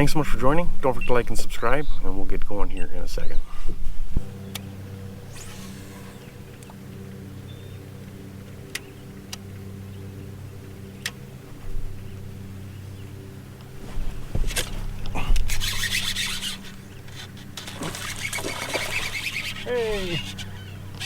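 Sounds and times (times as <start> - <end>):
low mechanical hum: 0.0 - 21.0
rubbing and handling noise: 13.8 - 20.5.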